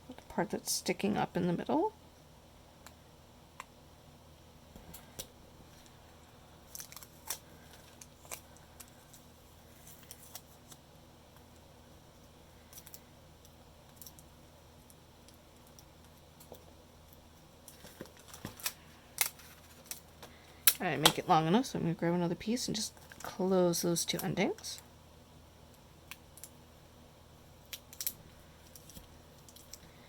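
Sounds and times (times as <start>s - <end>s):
low room hum: 0.0s - 30.0s
tape clicking and crackling: 4.7s - 21.2s, 25.7s - 26.6s, 27.6s - 29.9s.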